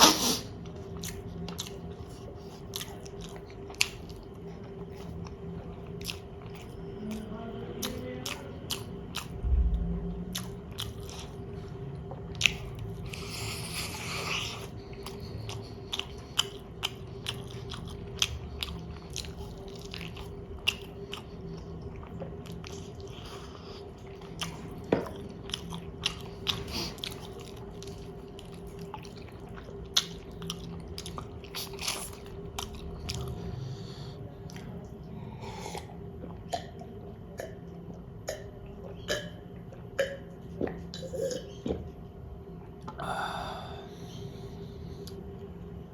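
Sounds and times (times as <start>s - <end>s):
faint steady hum: 0.0s - 45.9s
chewing with wet mouth clicks: 0.6s - 9.4s, 10.3s - 33.5s, 34.4s - 34.9s.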